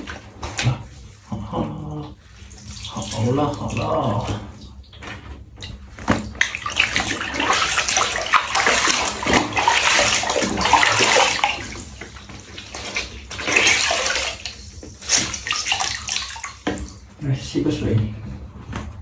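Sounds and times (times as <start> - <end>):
water running into a bathtub: 0.0 - 17.8.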